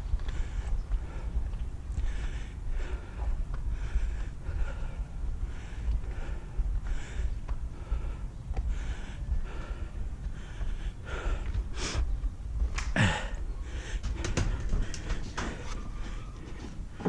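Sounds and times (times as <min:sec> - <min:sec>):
man breathing heavily: 0:00.0 - 0:17.0
steady low rumble: 0:00.0 - 0:17.0
man gasping: 0:12.9 - 0:15.2.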